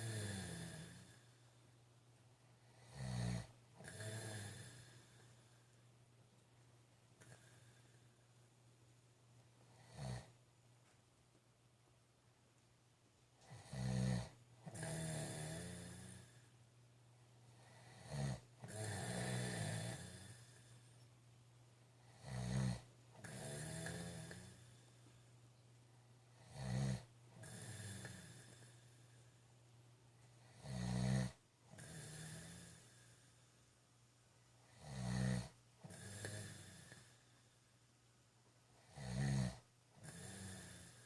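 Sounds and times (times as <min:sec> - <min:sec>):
man snoring: 0:00.0 - 0:01.3, 0:02.6 - 0:05.6, 0:07.2 - 0:08.1, 0:09.7 - 0:10.4, 0:13.4 - 0:16.5, 0:17.6 - 0:20.9, 0:22.0 - 0:25.0, 0:26.4 - 0:29.2, 0:30.4 - 0:33.5, 0:34.7 - 0:37.4, 0:38.8 - 0:41.0.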